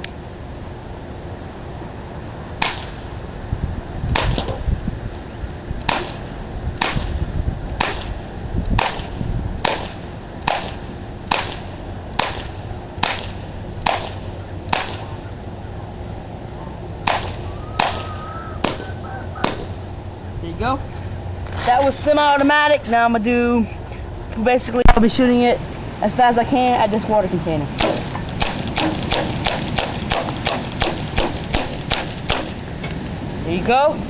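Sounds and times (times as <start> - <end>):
bb pistol pops: 5.8 - 6.2, 7.8 - 11.6, 12.2 - 15.1, 17.0 - 18.8, 27.8 - 32.6.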